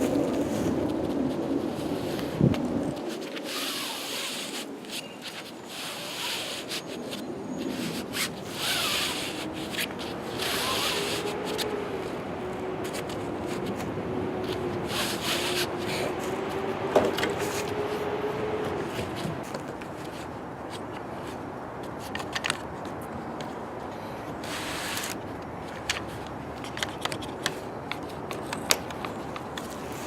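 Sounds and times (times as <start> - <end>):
rubbing and scraping: 0.0 - 30.0
clicks and rustles: 18.6 - 30.0.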